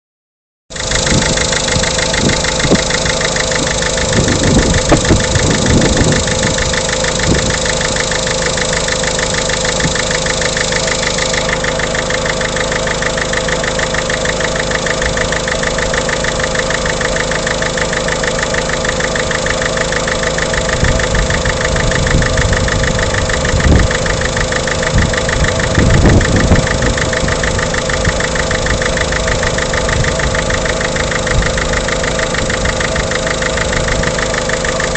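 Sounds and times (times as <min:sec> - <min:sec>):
diesel engine idling: 0:00.7 - 0:34.9.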